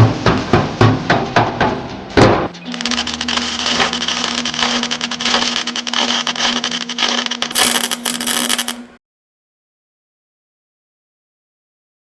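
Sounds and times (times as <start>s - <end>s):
welder arc crackling: 2.8s - 9.0s.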